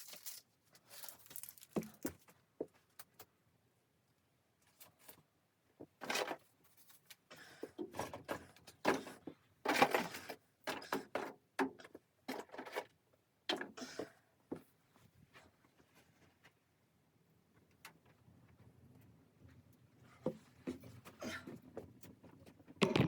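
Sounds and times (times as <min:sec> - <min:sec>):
rustling and scraping: 0:00.0 - 0:02.9.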